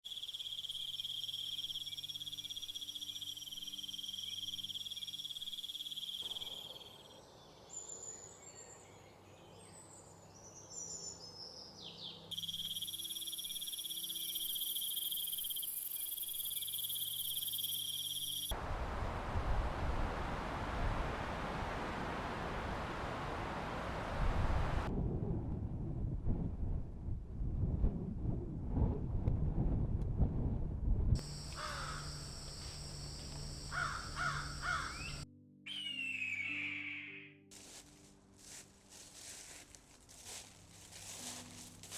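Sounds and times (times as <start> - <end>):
crickets trilling: 0.1 - 7.2, 12.3 - 18.5, 31.2 - 35.2
bird chirps: 0.1 - 8.7, 11.8 - 18.5, 33.7 - 37.4.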